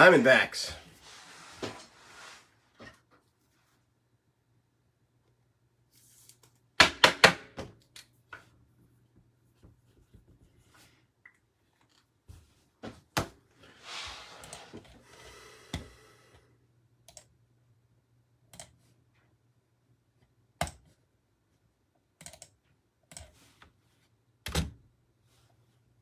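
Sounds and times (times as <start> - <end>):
keyboard and mouse clicks: 18.5 - 18.8, 22.2 - 23.4.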